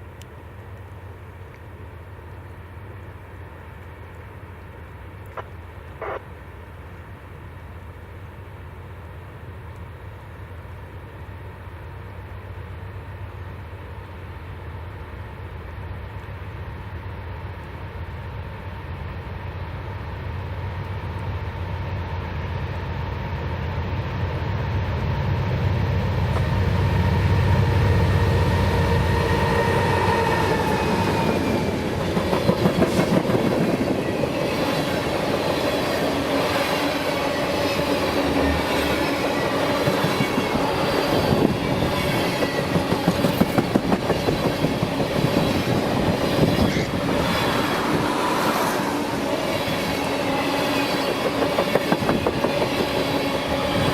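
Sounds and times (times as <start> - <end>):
train wheels clacking on rail joints: 30.2 - 47.6, 49.4 - 53.9.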